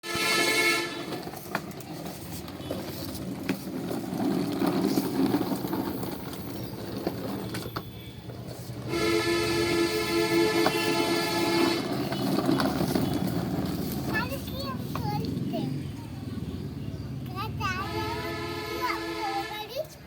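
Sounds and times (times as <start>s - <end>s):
electronic horn-like toy tone: 0.0s - 1.1s, 8.9s - 12.3s.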